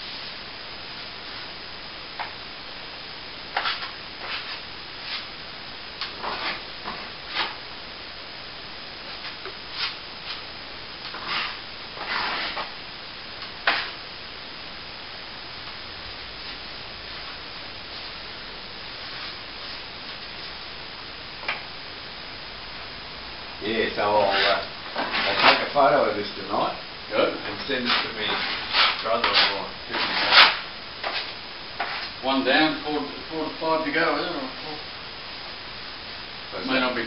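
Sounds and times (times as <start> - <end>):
steady hiss: 0.0 - 37.0
tool scraping plaster wall: 11.1 - 12.7, 27.6 - 32.1.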